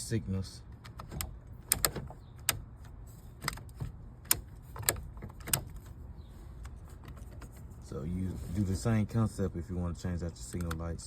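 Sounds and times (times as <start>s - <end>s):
sharp clicks and light knocks: 0.7s - 6.0s, 10.3s - 10.9s.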